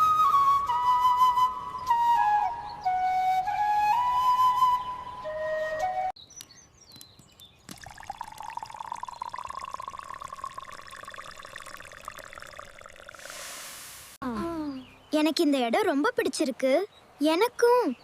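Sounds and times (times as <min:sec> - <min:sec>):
flute tune: 0:00.0 - 0:06.2
water pouring into container: 0:07.7 - 0:14.1.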